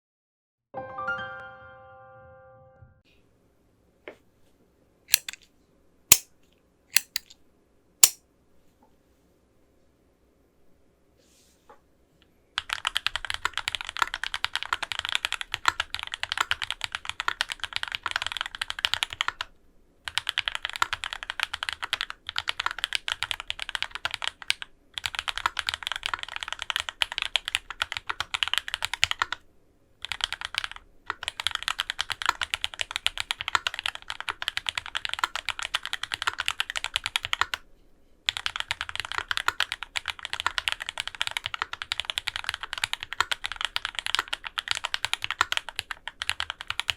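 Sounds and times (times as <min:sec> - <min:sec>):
fast mechanical keyboard typing: 0:05.1 - 0:05.4, 0:07.0 - 0:07.3, 0:12.6 - 0:19.5, 0:20.1 - 0:29.4, 0:30.0 - 0:37.6, 0:38.3 - 0:46.9.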